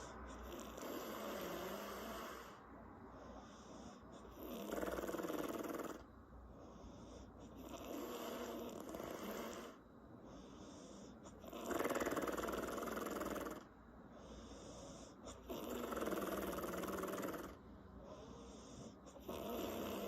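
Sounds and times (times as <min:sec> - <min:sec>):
woman snoring: 0:00.0 - 0:02.6, 0:04.4 - 0:06.0, 0:07.6 - 0:09.8, 0:11.4 - 0:13.7, 0:15.3 - 0:17.6, 0:18.8 - 0:20.0
quiet breathing: 0:00.0 - 0:20.0.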